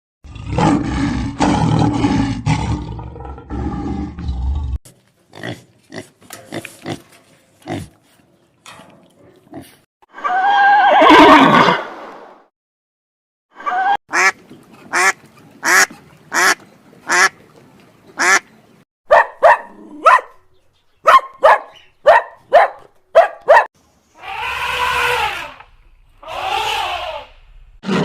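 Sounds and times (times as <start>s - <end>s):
duck quacking: 13.6s - 17.4s, 18.2s - 18.5s
harsh animal call: 24.2s - 28.0s.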